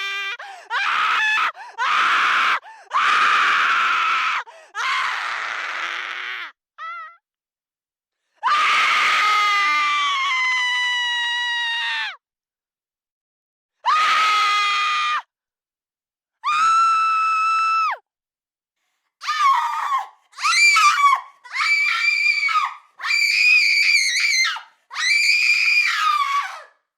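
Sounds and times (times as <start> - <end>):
woman screaming: 19.2 - 26.7.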